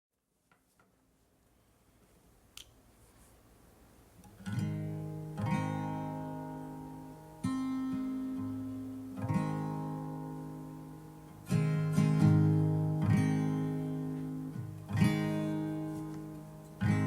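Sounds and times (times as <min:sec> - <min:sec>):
acoustic guitar strumming chords: 0:04.2 - 0:17.0.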